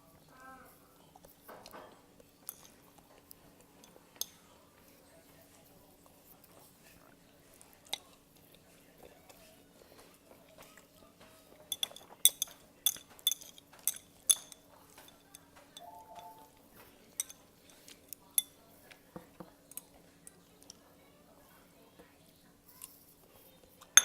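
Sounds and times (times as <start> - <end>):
utensils clinking against a bowl: 1.4 - 5.4, 7.8 - 19.9.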